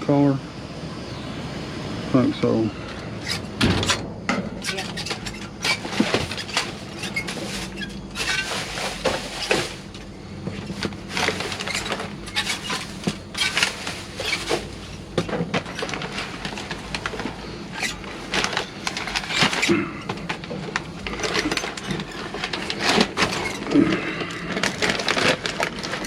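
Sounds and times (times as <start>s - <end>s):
steady low hum: 0.0s - 26.0s
objects and packaging rustling: 3.2s - 26.0s.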